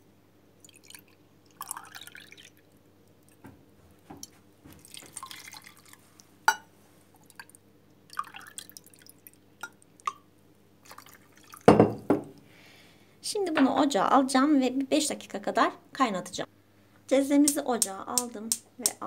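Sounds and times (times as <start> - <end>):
water splashing into a pot: 0.6 - 2.7, 4.8 - 6.6, 7.2 - 10.2, 10.8 - 11.7
glass clink: 6.5 - 6.7, 11.7 - 12.3.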